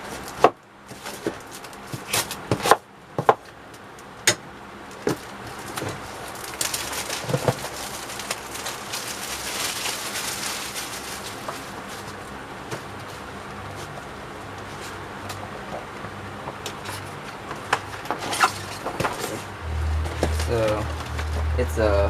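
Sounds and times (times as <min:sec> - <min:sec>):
packaging rustling: 0:05.1 - 0:14.0, 0:16.7 - 0:21.5.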